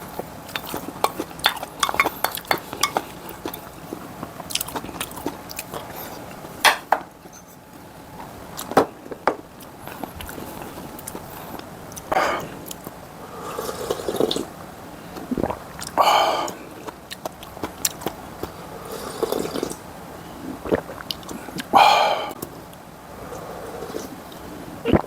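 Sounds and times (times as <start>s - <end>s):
chewing and mouth smacks: 0.1s - 6.3s, 15.2s - 18.6s, 20.6s - 21.7s
slurping noodles and broth: 9.8s - 14.5s, 18.8s - 19.8s, 23.2s - 25.0s.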